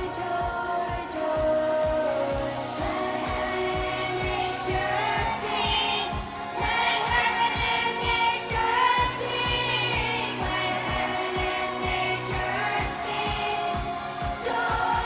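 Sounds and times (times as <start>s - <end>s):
upbeat pop song with group vocals: 0.0s - 15.0s.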